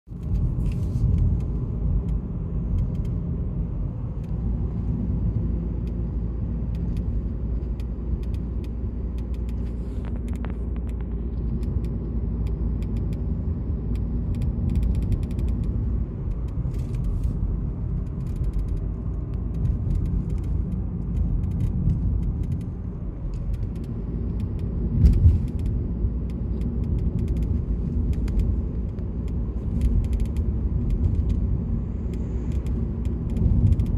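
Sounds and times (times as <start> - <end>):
road and engine rumble: 0.0 - 33.9
trim creaks and clicks: 13.9 - 33.9.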